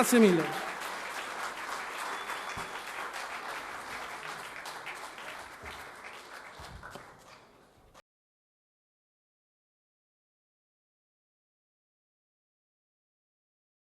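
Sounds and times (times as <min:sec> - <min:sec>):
audience applauding: 0:00.0 - 0:07.7.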